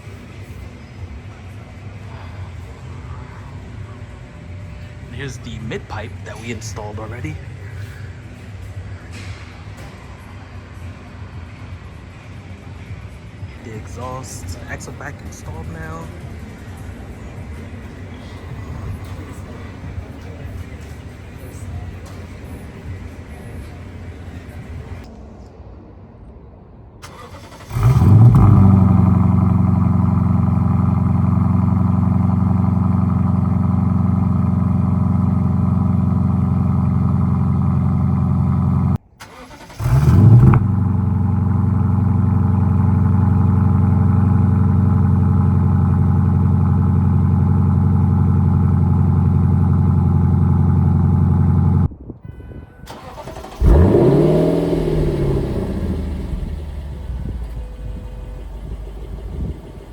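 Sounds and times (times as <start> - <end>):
deep engine idle: 0.0 - 8.5, 13.6 - 25.1, 27.7 - 39.0, 39.8 - 51.9, 53.0 - 59.9
car engine starting and revving: 13.6 - 25.1, 27.0 - 51.9, 52.9 - 59.9.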